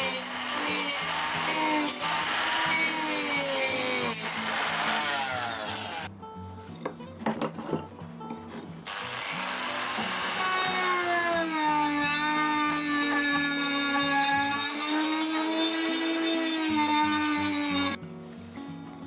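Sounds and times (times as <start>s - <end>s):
electric power tool motor: 0.0s - 6.1s, 8.9s - 18.0s.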